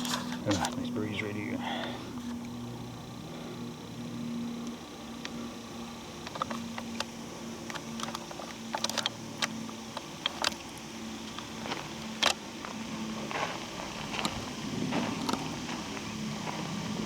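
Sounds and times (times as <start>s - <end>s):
footsteps crunching through dry leaves: 12.6s - 17.0s.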